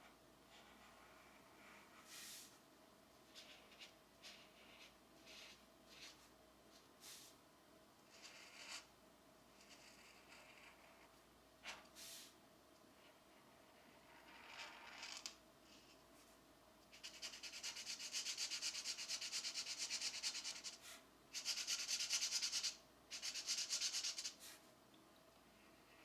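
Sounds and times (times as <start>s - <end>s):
pencil shading on paper: 3.3s - 6.2s, 8.1s - 8.9s, 9.6s - 11.8s, 16.9s - 20.8s, 21.4s - 24.4s
pencil scratch: 3.3s - 7.2s, 8.1s - 8.9s, 9.6s - 11.9s, 16.9s - 24.6s.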